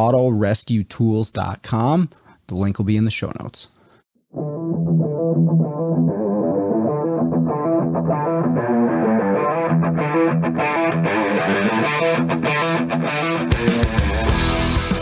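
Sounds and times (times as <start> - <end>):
guitar-led music with beat: 4.3 - 15.0
full-band rock music: 4.4 - 15.0.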